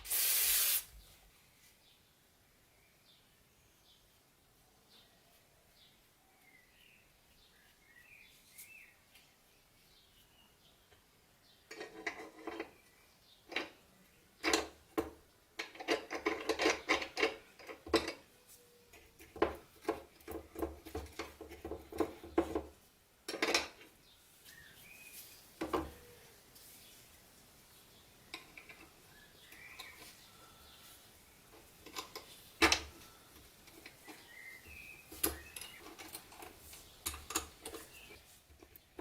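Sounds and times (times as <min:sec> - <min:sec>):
metal padlock parts clinking: 0:35.2 - 0:38.0.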